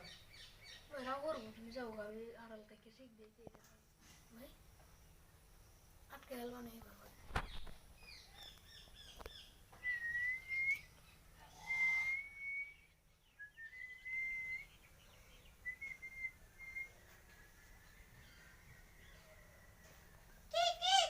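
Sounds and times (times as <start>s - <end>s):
faint chirps: 4.0s - 20.6s
clear whistled notes: 9.8s - 10.9s, 11.7s - 14.8s.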